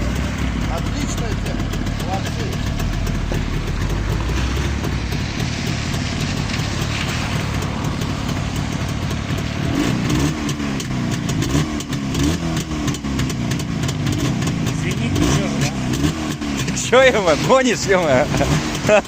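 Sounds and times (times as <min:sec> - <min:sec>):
two-stroke engine idling: 0:00.0 - 0:19.0.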